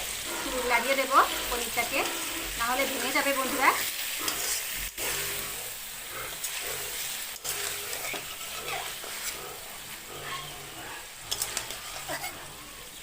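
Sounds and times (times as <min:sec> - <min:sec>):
cheese frying in hot oil: 0:00.0 - 0:13.0
spatula scraping pan: 0:00.0 - 0:13.0.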